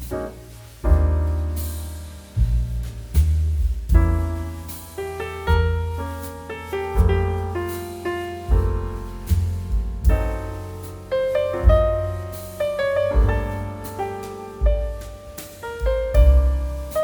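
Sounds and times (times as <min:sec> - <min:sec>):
piano music with bass notes: 0:00.0 - 0:17.0.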